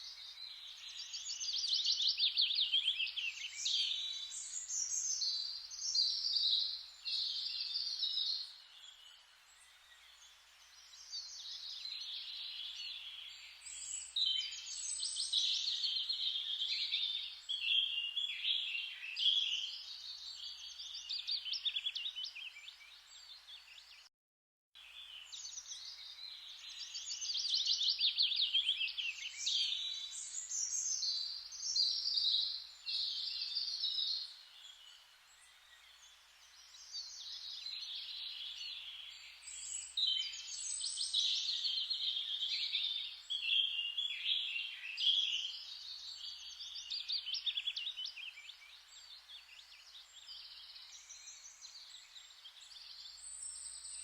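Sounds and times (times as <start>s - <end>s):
faint hiss: 0.0s - 23.7s
songbirds chirping and trilling: 0.0s - 24.1s, 24.8s - 54.0s.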